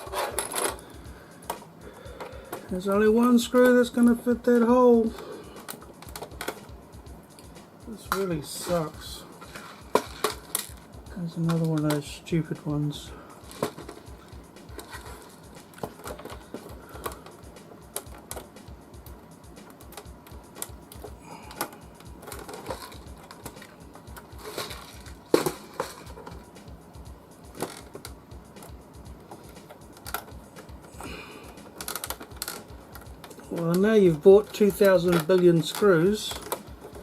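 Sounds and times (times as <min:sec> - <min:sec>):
screws and metal parts clicking: 0:31.5 - 0:37.0.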